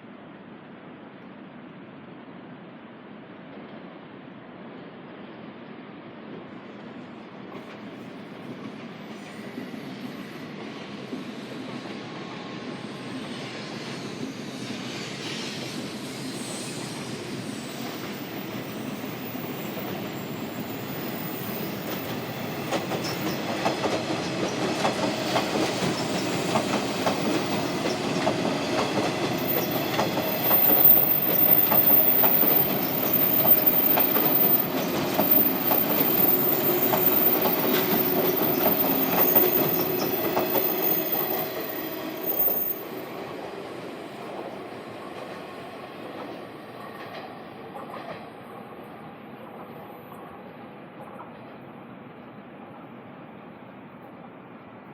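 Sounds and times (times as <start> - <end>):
train approaching: 0.0 - 54.9.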